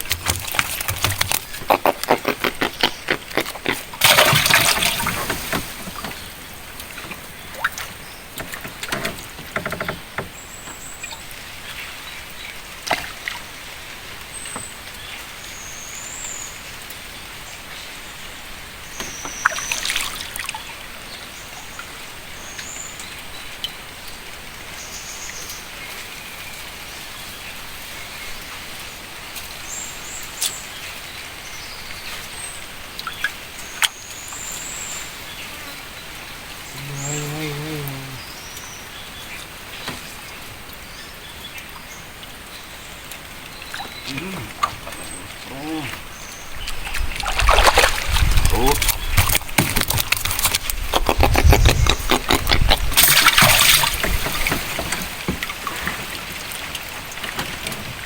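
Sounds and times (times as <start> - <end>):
rapid clicks and splashes: 0.0 - 10.4, 46.7 - 58.0
water sloshing against a boat: 0.0 - 15.0, 41.7 - 58.0.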